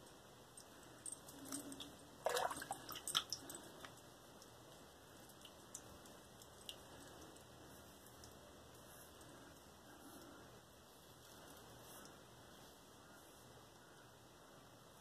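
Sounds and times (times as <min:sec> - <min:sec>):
faint wet clicks: 0:00.5 - 0:10.4.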